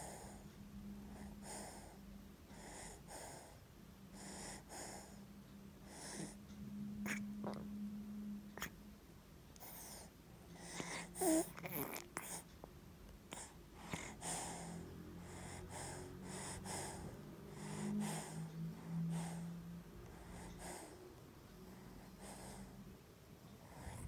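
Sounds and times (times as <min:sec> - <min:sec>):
congested baby breathing: 0:01.1 - 0:03.6, 0:04.2 - 0:06.4, 0:09.6 - 0:12.5, 0:13.3 - 0:22.9
baby whimpering: 0:07.1 - 0:07.6, 0:10.8 - 0:12.4.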